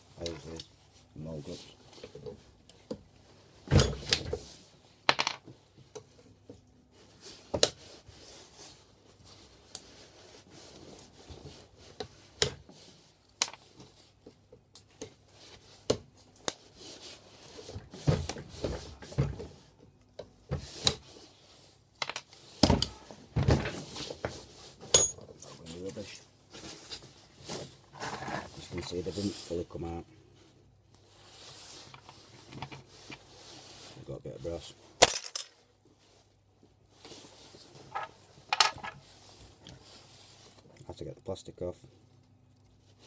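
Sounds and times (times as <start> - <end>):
scraping and rubbing: 25.6 - 29.6.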